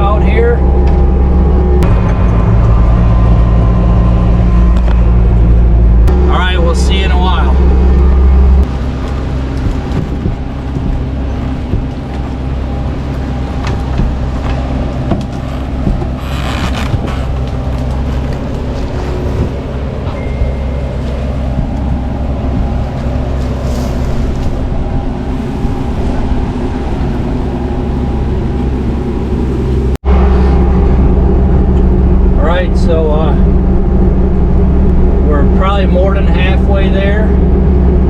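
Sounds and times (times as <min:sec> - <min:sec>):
diesel engine running under load: 0:00.0 - 0:38.0.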